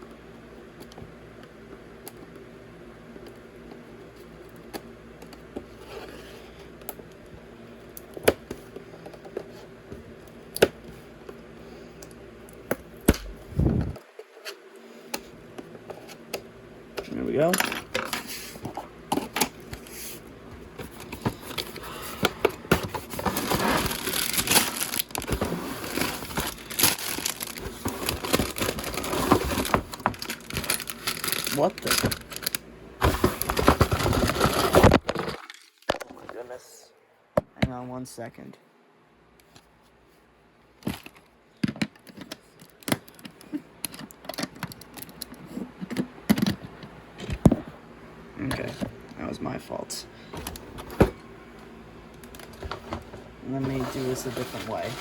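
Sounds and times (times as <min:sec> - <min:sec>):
plastic bags crinkling: 0:22.8 - 0:36.0
plastic parts clicking and knocking: 0:40.8 - 0:47.6.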